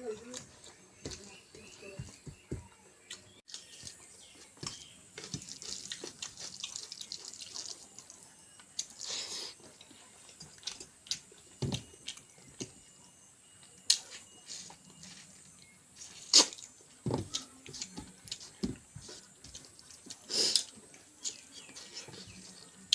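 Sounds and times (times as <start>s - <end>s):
wet chewing: 3.0s - 12.7s
lip smacks: 16.2s - 16.7s.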